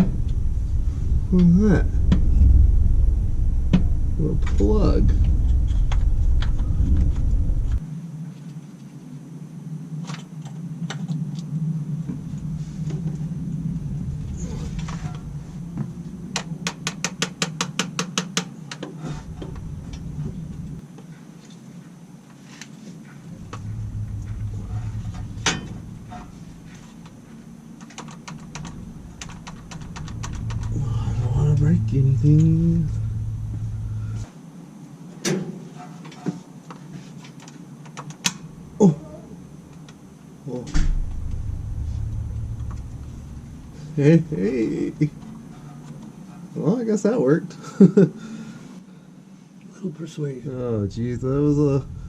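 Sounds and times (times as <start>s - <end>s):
low rumble: 0.0s - 7.8s, 11.5s - 17.0s, 19.0s - 20.8s, 23.2s - 34.3s, 38.3s - 46.4s, 50.4s - 52.0s
fast even clicking: 27.8s - 31.6s.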